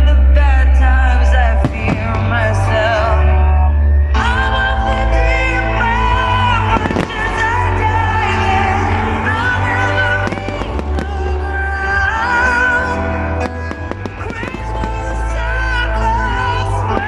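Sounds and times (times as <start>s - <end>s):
loud pop song: 0.0s - 17.0s
fireworks banging and crackling: 1.6s - 2.2s, 6.8s - 7.3s, 10.2s - 12.1s, 13.1s - 16.2s.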